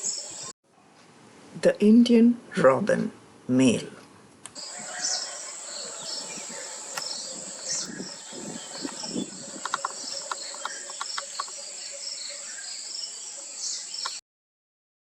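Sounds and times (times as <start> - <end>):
insects trilling: 4.6 - 14.2.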